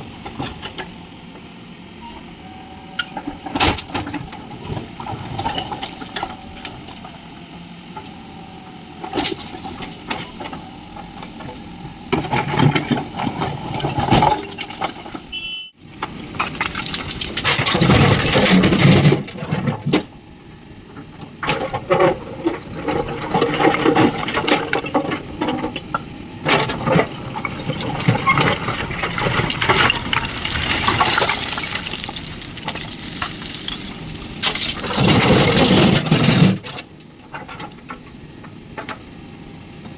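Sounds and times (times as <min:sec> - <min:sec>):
backhoe engine under load: 0:00.0 - 0:39.9
material rushing and clattering: 0:26.5 - 0:37.7.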